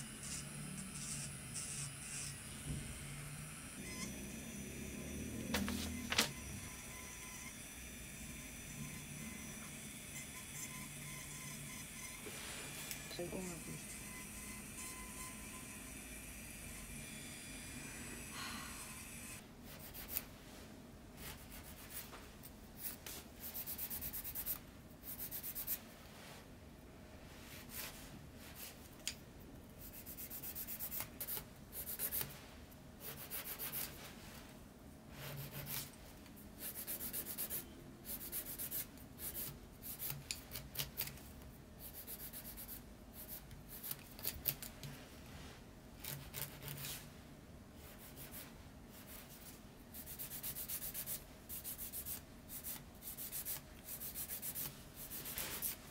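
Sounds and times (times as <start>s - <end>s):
nail drill bit sanding: 0.0s - 3.2s.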